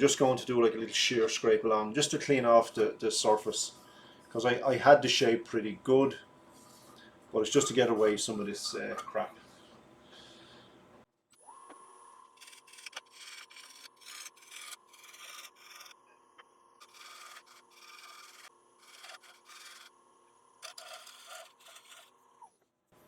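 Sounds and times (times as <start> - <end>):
gouge scraping wooden bowl: 12.4 - 16.0, 16.8 - 19.9, 20.6 - 22.2
wood lathe humming: 16.8 - 20.0, 20.6 - 22.2.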